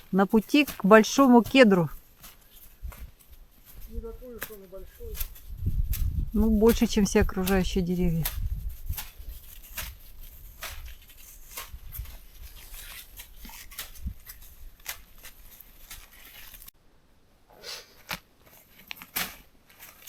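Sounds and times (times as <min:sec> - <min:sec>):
snowshoe footsteps crunching in snow: 0:00.0 - 0:16.7.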